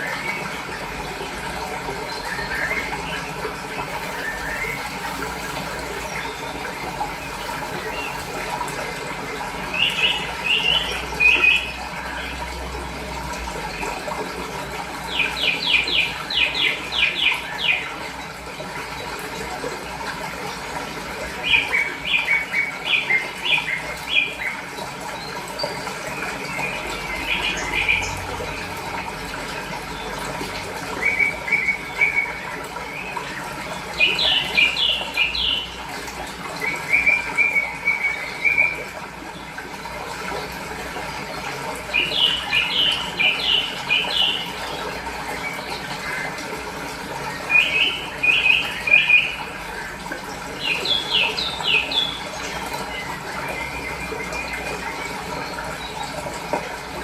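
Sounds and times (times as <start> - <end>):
flowing water: 0.0 - 57.0.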